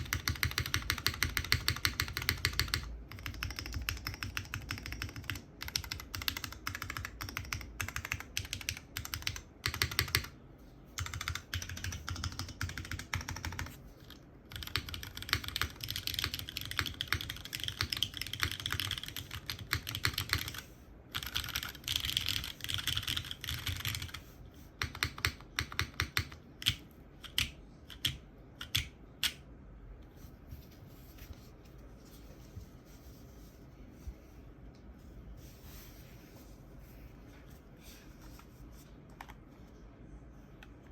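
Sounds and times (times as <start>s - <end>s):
mechanical keyboard typing: 0.0s - 10.4s, 11.0s - 24.2s, 24.8s - 29.4s.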